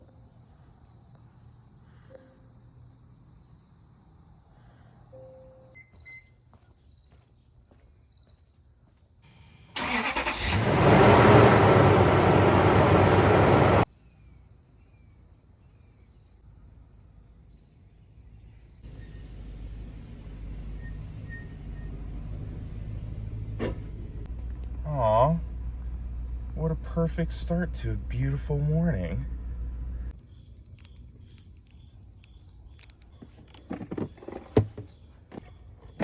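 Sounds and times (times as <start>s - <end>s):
faint bird chirps: 0.5s - 7.2s, 13.9s - 19.8s
vehicle engine starting and running: 9.7s - 13.9s, 18.8s - 30.1s.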